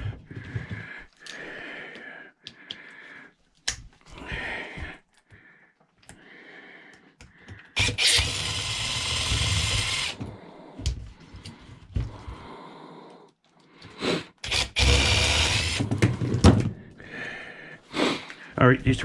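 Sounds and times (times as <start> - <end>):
power drill running: 7.8 - 10.2, 14.4 - 15.9.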